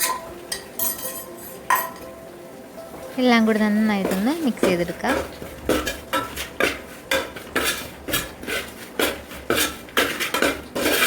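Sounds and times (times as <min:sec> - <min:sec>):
utensil scraping and knocking pan: 0:04.0 - 0:11.0.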